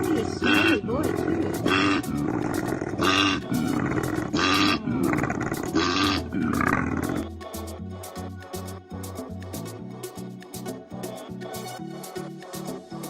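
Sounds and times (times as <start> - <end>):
music with steady beat: 0.0 - 13.0
loud roaring animal calls: 0.2 - 7.3.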